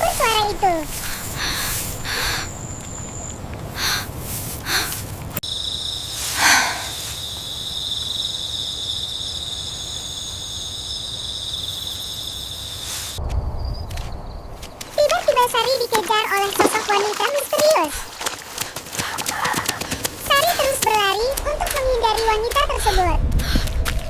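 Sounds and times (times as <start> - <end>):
rustling swishes: 0.0 - 2.5, 3.9 - 5.4
insects trilling: 0.0 - 13.2, 14.1 - 22.9.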